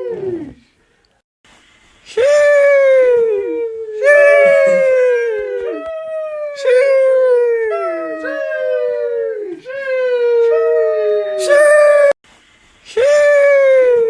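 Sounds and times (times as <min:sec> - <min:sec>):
person exclaiming sheesh: 0:04.0 - 0:05.6.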